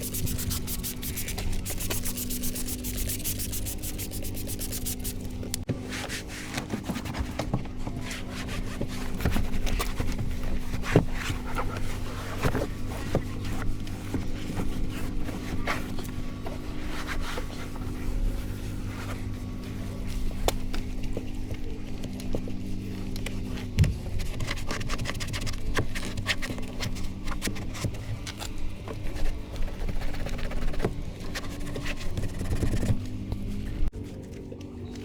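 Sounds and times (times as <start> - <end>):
rubbing and scraping strokes: 0.0 - 7.3.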